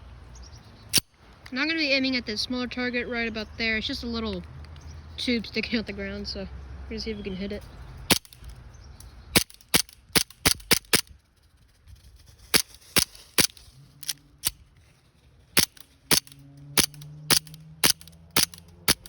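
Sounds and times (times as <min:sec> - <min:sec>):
airsoft pistol shots popping: 0:09.4 - 0:11.1, 0:15.6 - 0:19.0.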